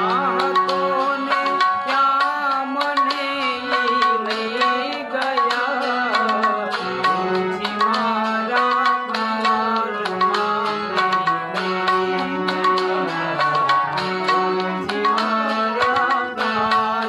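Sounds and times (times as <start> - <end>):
harmonium: 0.0 - 17.0
tabla beat: 0.0 - 17.0.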